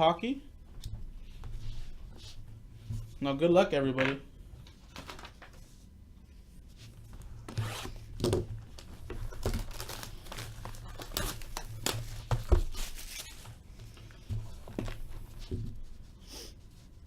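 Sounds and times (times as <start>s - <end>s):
plastic wrapping tearing and crinkling: 7.5s - 13.6s.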